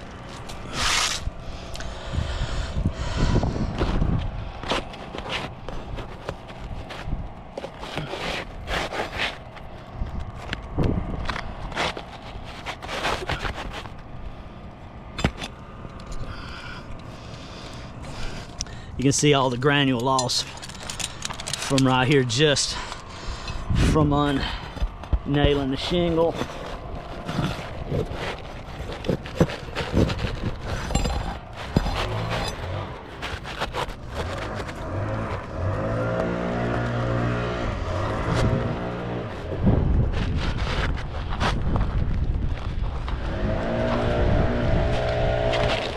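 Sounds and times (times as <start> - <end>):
engine running hum: 0.0 - 45.9
scraping on roof shingles: 3.8 - 14.2, 19.2 - 45.9.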